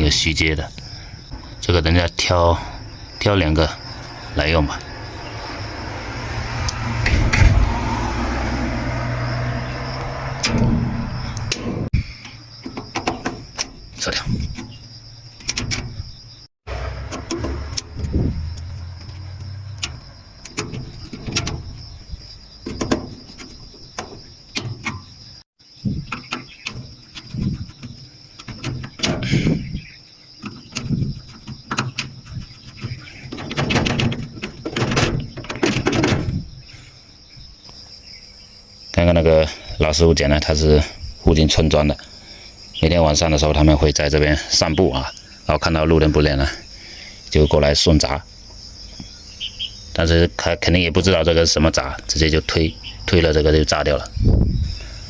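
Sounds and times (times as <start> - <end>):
crickets chirring: 0.0 - 55.0
hands clicking and knocking on wiring: 10.4 - 16.0, 19.8 - 21.8, 22.6 - 25.2, 26.0 - 29.5, 30.4 - 36.3.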